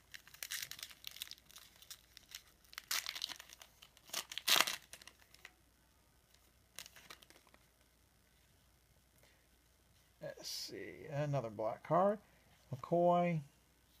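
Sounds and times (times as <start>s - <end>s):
trading cards rustling: 0.0s - 5.5s, 6.7s - 7.8s.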